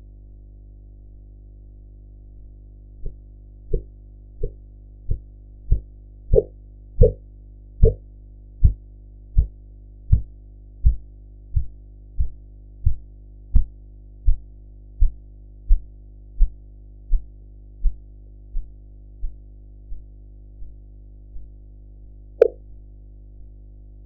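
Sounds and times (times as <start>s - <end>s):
steady low hum: 0.0s - 23.5s
heartbeat thumps through stethoscope: 3.0s - 7.2s, 7.8s - 8.0s, 8.6s - 8.8s, 9.4s - 20.7s.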